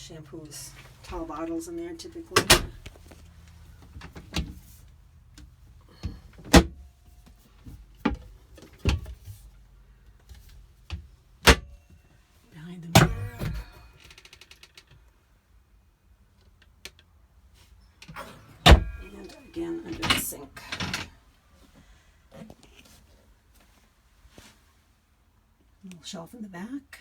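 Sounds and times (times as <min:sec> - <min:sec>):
cupboard catches clicking: 0:18.6 - 0:19.0.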